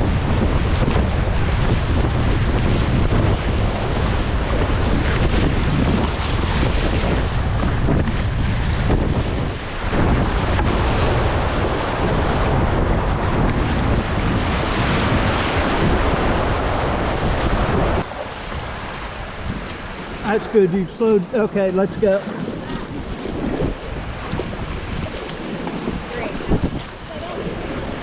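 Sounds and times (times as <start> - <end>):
wind buffeting microphone: 0.0 - 28.0
rushing whitewater: 9.2 - 28.0.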